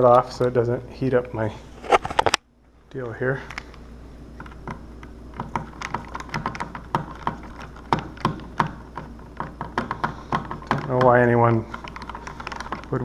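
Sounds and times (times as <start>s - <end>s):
screwdriver clicking on screws: 5.4s - 13.0s.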